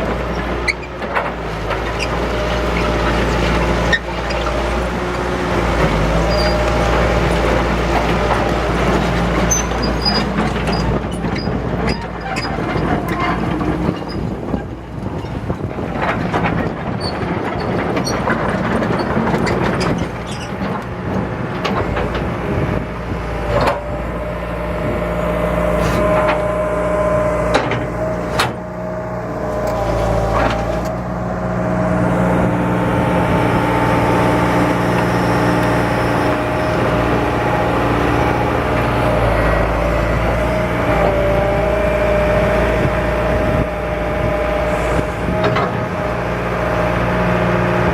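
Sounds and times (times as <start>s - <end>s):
excavator diesel engine running: 0.0s - 47.9s
steady whine: 23.6s - 39.7s.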